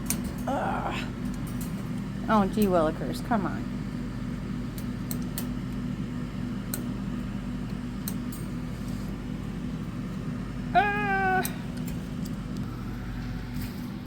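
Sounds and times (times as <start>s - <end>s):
low machine hum: 0.0s - 14.0s.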